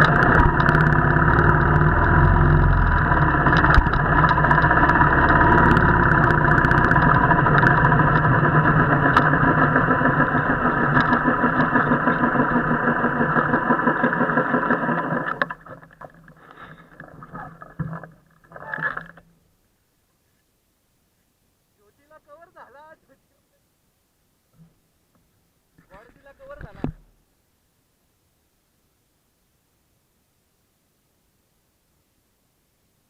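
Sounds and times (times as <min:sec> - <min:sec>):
motorcycle engine rumbling: 0:00.0 - 0:19.5.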